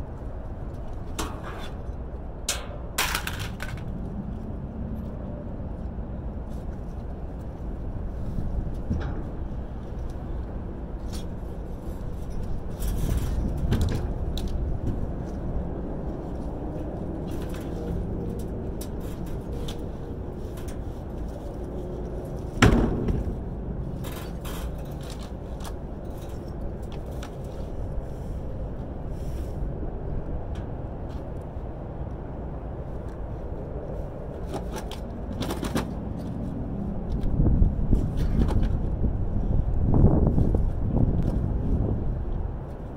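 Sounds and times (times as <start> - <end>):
low steady rumble: 0.0 - 42.9
scrap metal knocks and scrapes: 1.1 - 1.9, 22.4 - 27.4.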